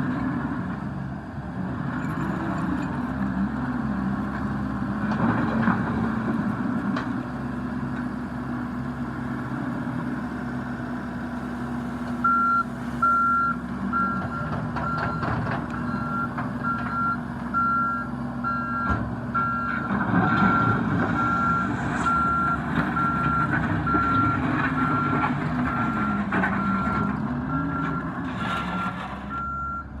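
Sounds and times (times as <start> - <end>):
diesel engine running: 0.0 - 30.0
backup alarm beeping: 12.2 - 15.3.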